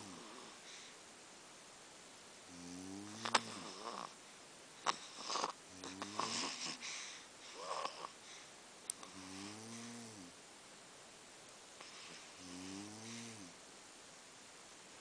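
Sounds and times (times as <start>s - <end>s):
people snoring: 2.5s - 4.2s, 4.9s - 6.8s, 9.0s - 10.3s, 11.8s - 13.6s.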